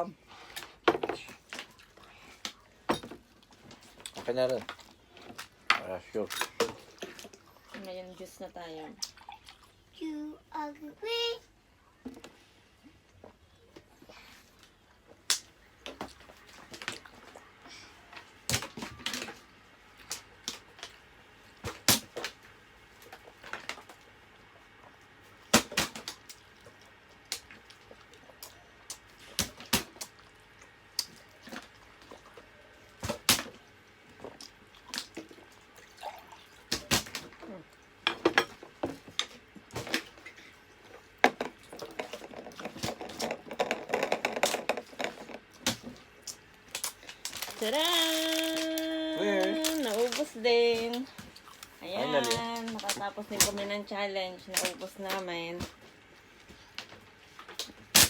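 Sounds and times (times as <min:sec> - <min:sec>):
wet chewing and slurping: 0:09.0 - 0:09.9.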